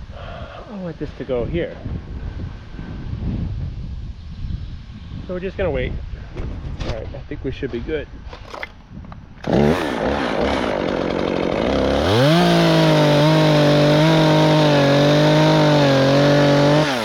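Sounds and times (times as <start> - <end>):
chainsaw revving: 9.4 - 17.0.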